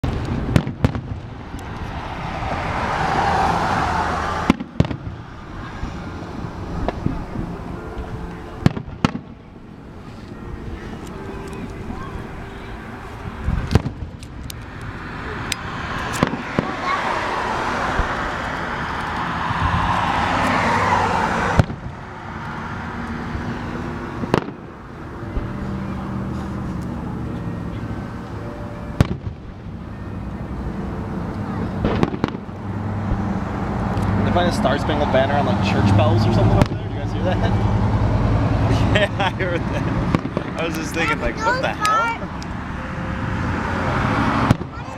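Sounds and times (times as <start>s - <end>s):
fireworks bangs: 0.0s - 2.8s, 4.3s - 5.8s, 8.6s - 9.4s, 13.6s - 14.5s, 15.6s - 20.7s, 21.5s - 22.0s, 24.2s - 24.6s, 29.0s - 29.6s, 31.8s - 33.3s, 40.1s - 40.6s, 44.4s - 44.9s
rush of noise: 0.0s - 44.9s.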